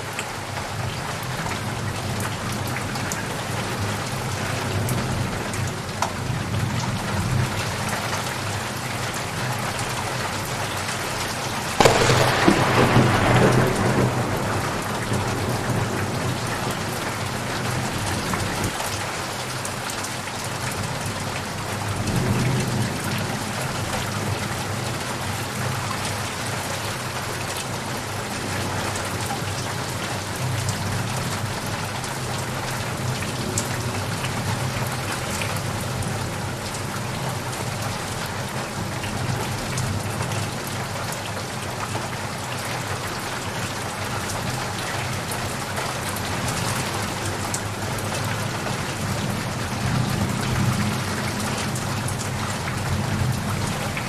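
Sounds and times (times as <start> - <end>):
heavy rain: 0.0 - 54.0
thunder rumble: 11.7 - 18.8.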